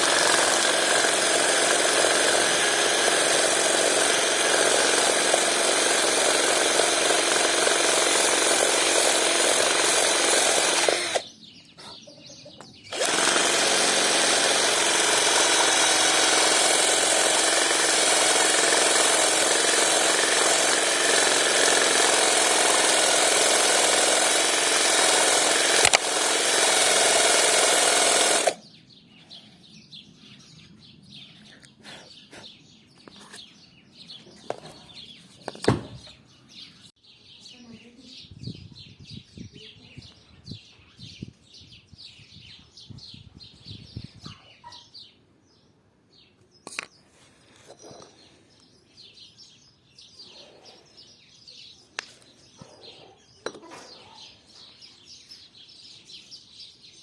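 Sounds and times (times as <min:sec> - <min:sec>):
electric drill with sanding disc: 0:00.0 - 0:11.3, 0:12.9 - 0:28.6.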